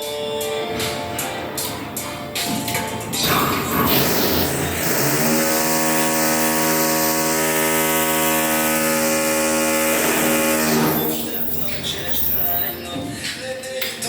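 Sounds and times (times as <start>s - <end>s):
power tool motor buzzing: 3.9s - 12.6s.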